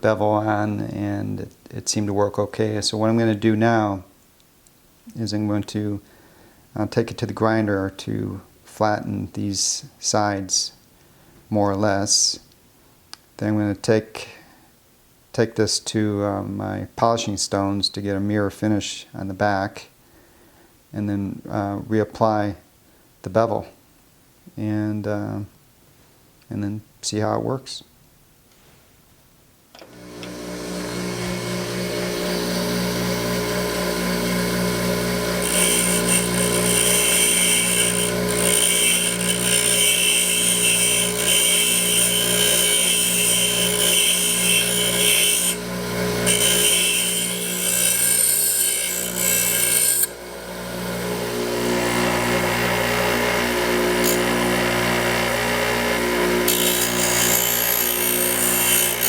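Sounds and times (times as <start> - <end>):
grinder motor hum: 29.9 - 59.0
metal grinding hiss: 35.4 - 50.1.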